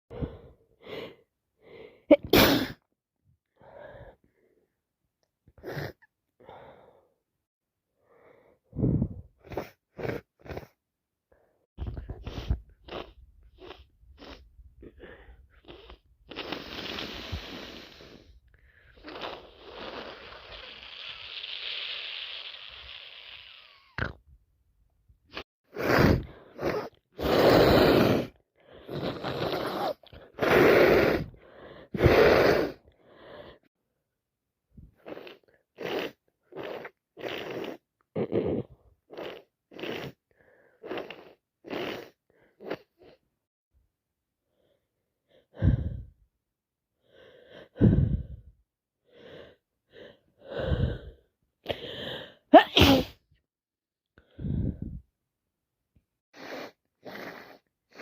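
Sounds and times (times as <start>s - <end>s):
person sneezing: 2.1s - 2.8s, 52.5s - 53.2s
person sniffing: 12.0s - 24.0s, 25.3s - 33.6s, 35.0s - 37.8s, 39.1s - 40.2s, 40.8s - 43.2s, 50.5s - 53.2s, 56.3s - 58.0s
breathy hissing: 15.1s - 24.0s, 56.4s - 58.0s.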